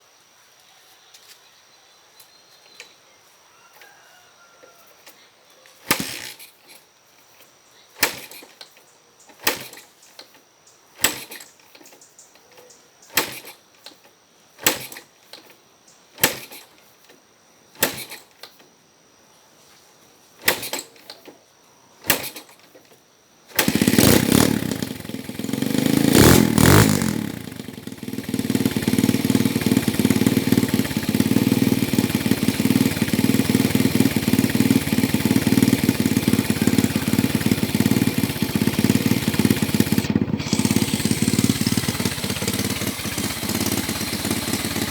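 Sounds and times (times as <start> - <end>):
motorcycle kick-start strokes: 5.8 - 6.9, 8.0 - 12.2, 13.1 - 18.7, 20.4 - 21.4, 22.0 - 44.9
motorcycle engine running: 23.6 - 44.9.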